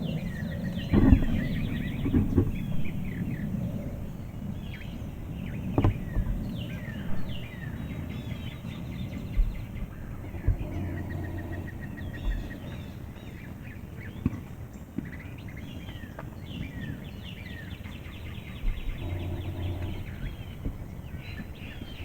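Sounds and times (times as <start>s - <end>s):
songbirds singing and chirping: 0.0s - 22.0s
low hum: 18.4s - 22.0s.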